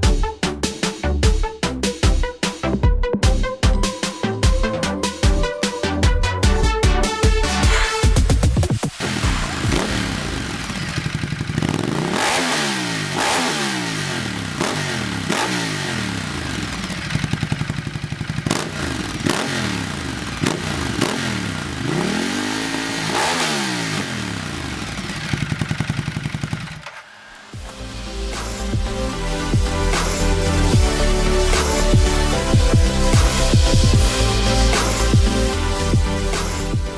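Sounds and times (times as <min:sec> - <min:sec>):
motorcycle engine revving: 0:07.4 - 0:36.9.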